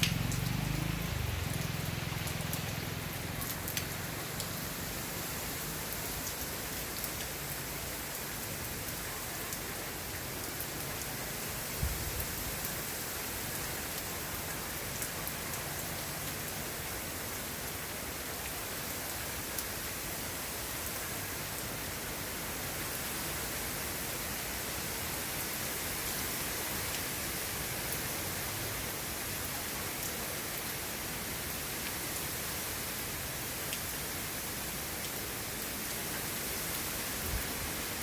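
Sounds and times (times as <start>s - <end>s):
raindrop ticks: 0.0s - 4.6s
steady rain falling: 0.0s - 38.0s.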